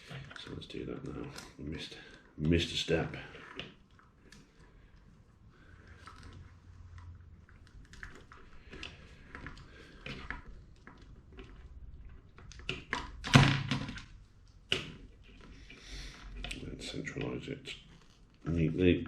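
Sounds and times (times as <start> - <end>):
plastic parts clicking and rattling: 0.0 - 18.9.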